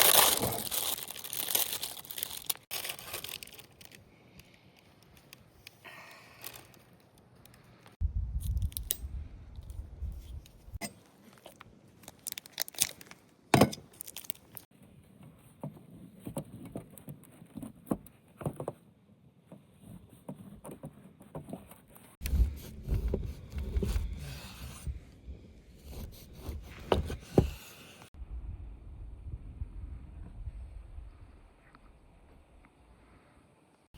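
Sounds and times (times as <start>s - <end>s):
wind rumble on microphone: 8.0s - 10.8s, 28.2s - 33.0s.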